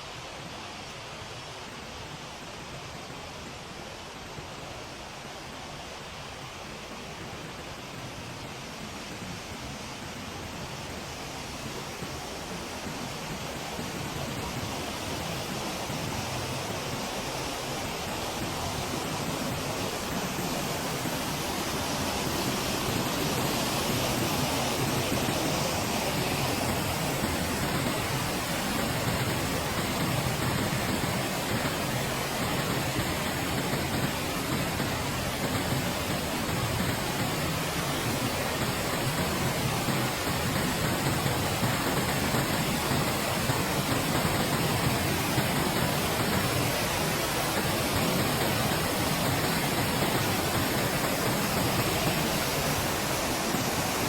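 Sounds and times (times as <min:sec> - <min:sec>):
waterfall rushing: 0:12.6 - 0:54.0.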